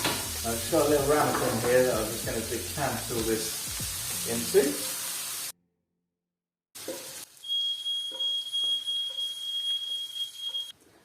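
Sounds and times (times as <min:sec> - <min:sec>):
pan sizzling: 0:00.0 - 0:05.6, 0:06.8 - 0:10.7
smoke alarm beeping: 0:07.4 - 0:10.7.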